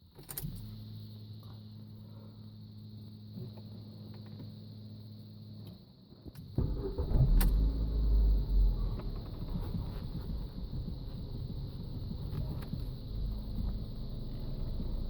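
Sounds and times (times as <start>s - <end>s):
steady low hum: 0.0s - 15.0s
loud low rumble: 7.0s - 15.0s
steering knocks: 8.7s - 15.0s.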